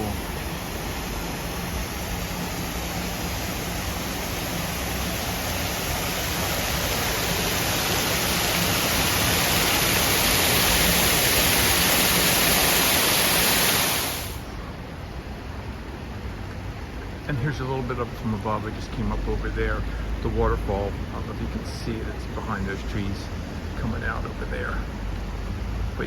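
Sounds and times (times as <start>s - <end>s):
rushing water: 0.0s - 26.0s.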